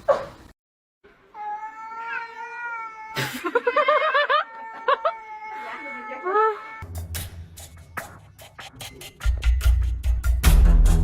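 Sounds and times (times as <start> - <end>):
cat yowling: 1.4 - 6.8.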